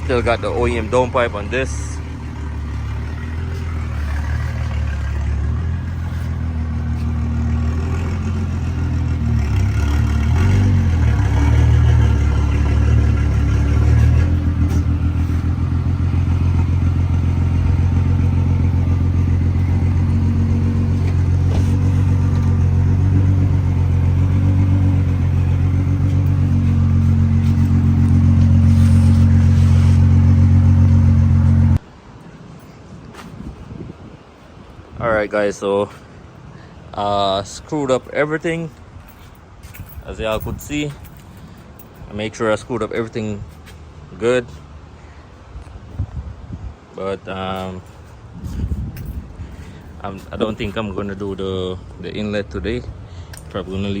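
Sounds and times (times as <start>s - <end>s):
loud deep engine exhaust drone: 0.0s - 31.9s.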